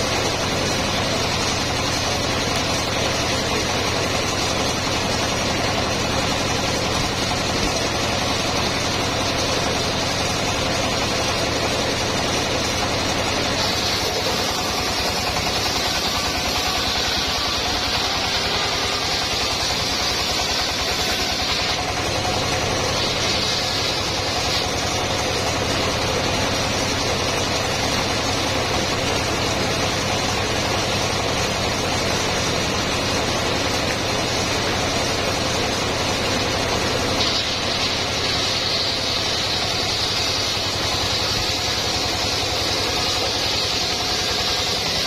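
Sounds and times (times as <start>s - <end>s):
sawmill engine droning: 0.0s - 45.0s.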